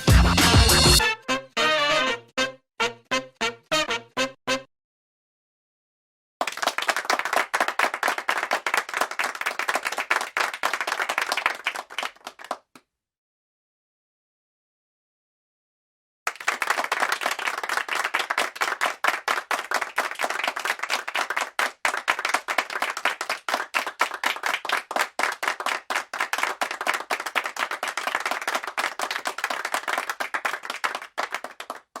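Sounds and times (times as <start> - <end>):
audience applauding: 6.4 - 12.8, 16.3 - 32.0.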